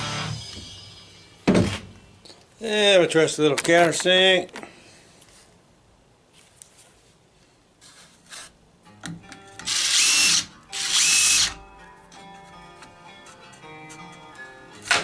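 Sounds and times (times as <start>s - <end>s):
background music: 0.0s - 1.9s, 8.8s - 15.0s
power drill countersinking: 9.6s - 11.6s.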